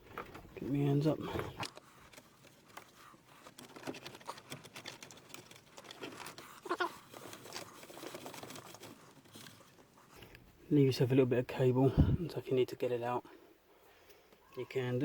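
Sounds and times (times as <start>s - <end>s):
cables and plastic trim rustling: 0.0s - 10.6s.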